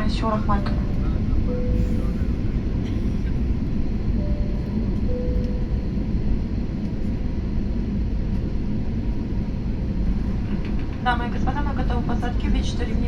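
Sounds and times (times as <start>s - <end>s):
airliner cabin engine rumble: 0.0s - 13.0s
faint brief tone: 4.2s - 5.8s.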